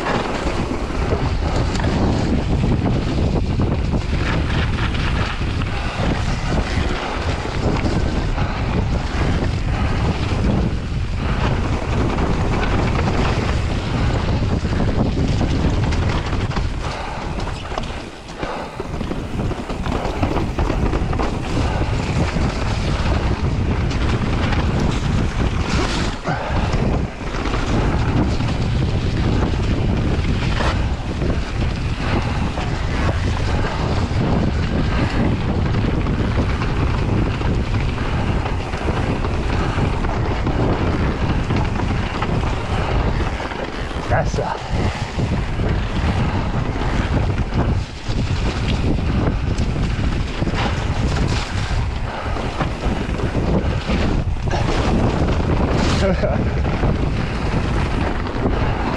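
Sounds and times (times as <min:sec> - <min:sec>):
low rumble of bike riding: 0:00.0 - 0:58.9
wind buffeting microphone: 0:00.0 - 0:58.9
bike knocking over rough ground: 0:11.4 - 0:44.1.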